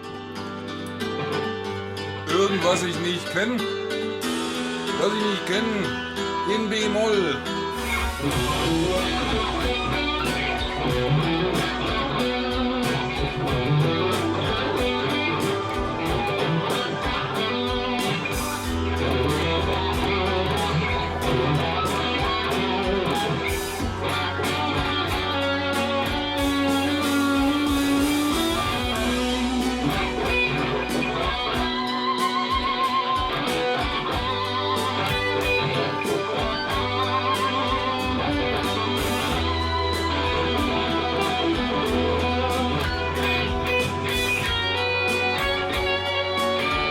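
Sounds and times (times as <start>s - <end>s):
drums: 0.0s - 46.9s
electric guitar lead: 0.0s - 46.9s
bass line: 5.9s - 46.9s.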